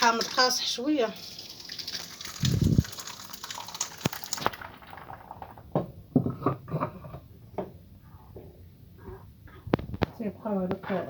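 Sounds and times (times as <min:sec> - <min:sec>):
juice pouring through strainer: 0:00.1 - 0:05.8.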